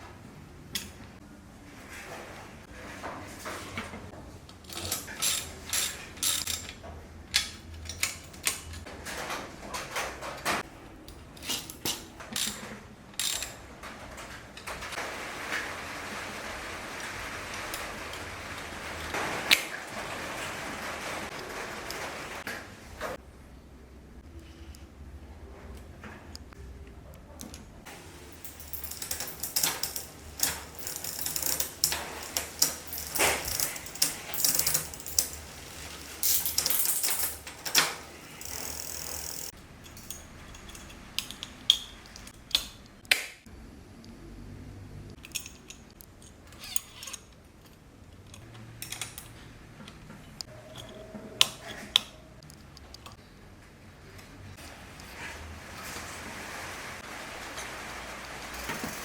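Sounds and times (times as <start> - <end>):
metal clicking and ratcheting tools: 4.6 - 8.9, 11.1 - 14.0, 28.3 - 43.2, 45.2 - 53.2, 58.6 - 59.0.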